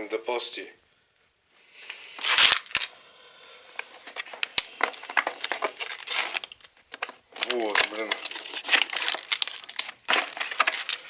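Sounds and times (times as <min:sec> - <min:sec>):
crinkling rustle: 0:01.8 - 0:03.0, 0:03.6 - 0:11.0
small crackles and ticks: 0:03.6 - 0:11.0.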